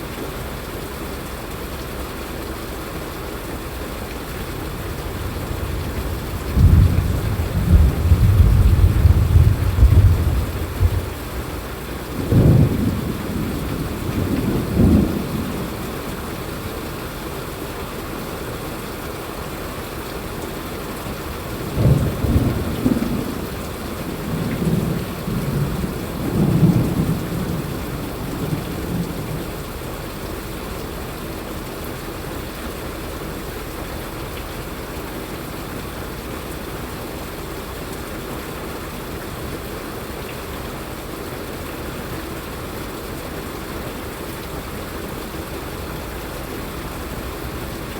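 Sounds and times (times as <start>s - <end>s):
steady rain: 0.0s - 47.9s
thunder rumbling: 4.4s - 16.7s, 21.6s - 29.9s.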